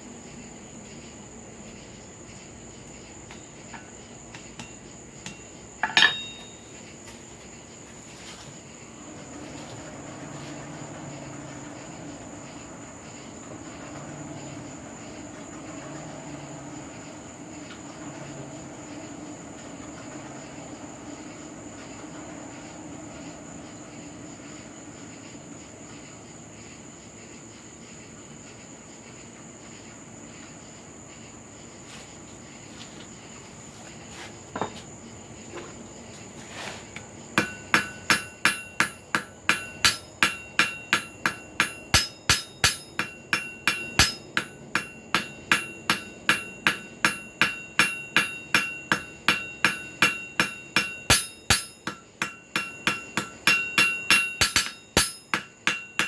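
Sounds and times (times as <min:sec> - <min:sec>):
hammer ringing on anvil: 0:04.6 - 0:06.8, 0:37.4 - 0:56.0.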